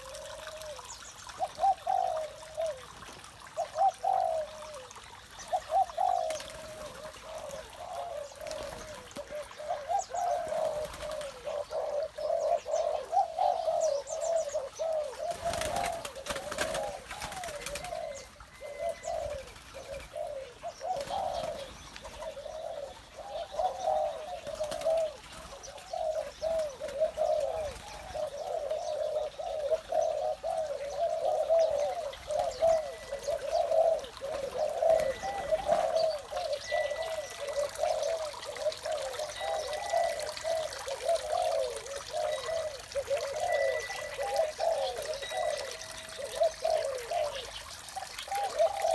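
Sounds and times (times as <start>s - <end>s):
doves cooing: 0.0s - 48.9s.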